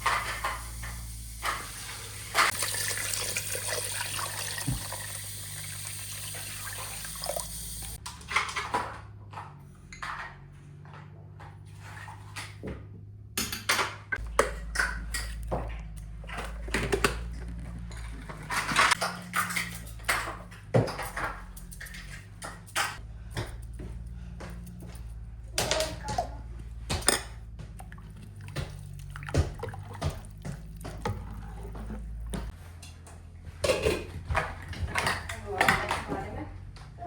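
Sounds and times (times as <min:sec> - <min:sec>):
water sloshing: 0:27.1 - 0:32.5.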